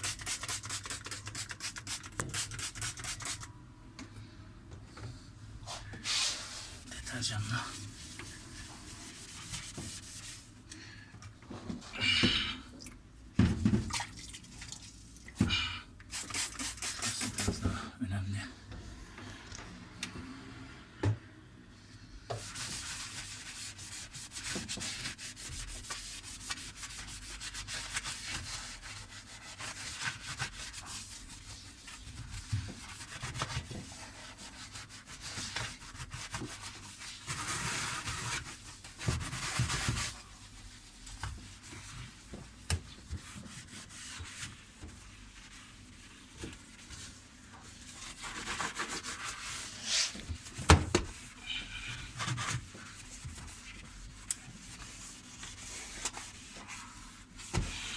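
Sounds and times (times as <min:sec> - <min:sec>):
hand scrubbing inside dishwasher: 0:16.1 - 0:17.8.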